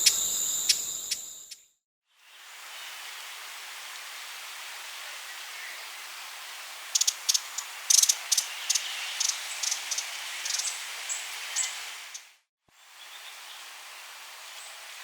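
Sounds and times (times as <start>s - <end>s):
hummingbird chipping: 0.0s - 1.5s, 7.0s - 10.7s
steady hiss: 2.2s - 12.2s.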